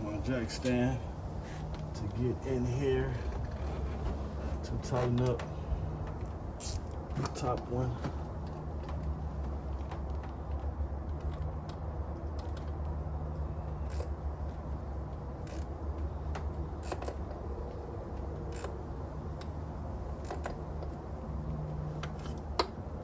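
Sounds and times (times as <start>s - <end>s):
steady low hum: 0.0s - 23.0s
ratchet clicking: 6.6s - 7.0s, 13.9s - 14.1s, 15.4s - 15.8s, 16.8s - 17.2s, 18.5s - 18.8s, 20.2s - 21.0s.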